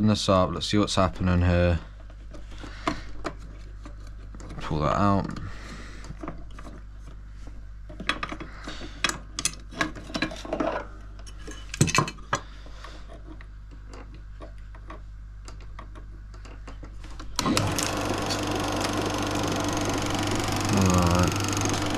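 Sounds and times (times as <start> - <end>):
low electrical hum: 0.0 - 21.9
projector running noise: 17.2 - 21.9.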